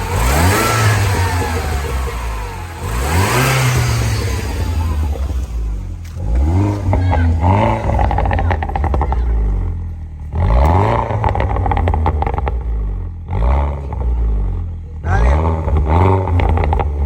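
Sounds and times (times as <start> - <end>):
car engine revving and idling: 0.0 - 17.0.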